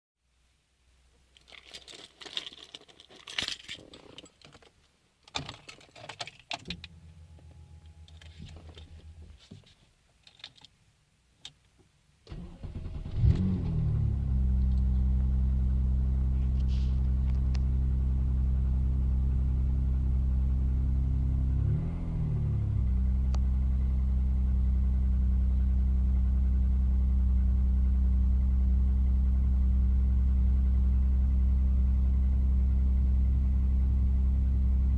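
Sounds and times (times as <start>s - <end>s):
car keys jangling: 1.4s - 6.9s
car engine idling: 6.7s - 9.4s, 12.3s - 34.9s
car engine cranking: 12.3s - 15.3s.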